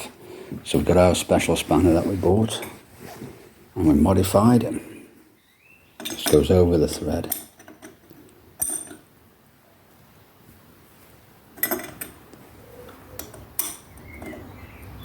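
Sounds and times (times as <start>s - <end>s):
spanner clinking on nut: 6.0s - 9.1s, 11.6s - 12.2s, 13.2s - 14.4s.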